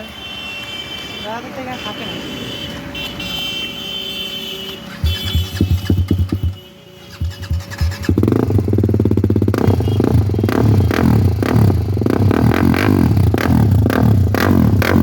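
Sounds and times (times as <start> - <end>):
exhaust cracks: 4.9 - 15.0
motorcycle engine revving: 4.9 - 15.0.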